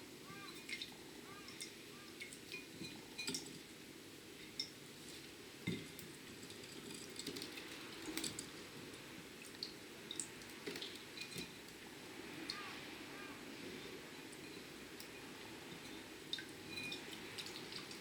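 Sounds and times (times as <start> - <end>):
light clinks against dish: 11.2 - 11.6, 16.7 - 17.1.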